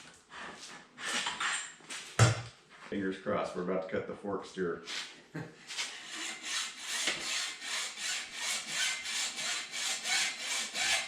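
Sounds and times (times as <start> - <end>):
hacksaw cutting metal tube: 5.8 - 11.0.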